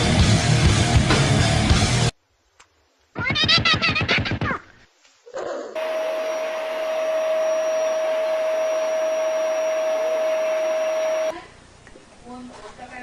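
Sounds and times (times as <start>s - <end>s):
music: 0.0s - 2.1s
small electric motor whirring: 5.8s - 11.3s.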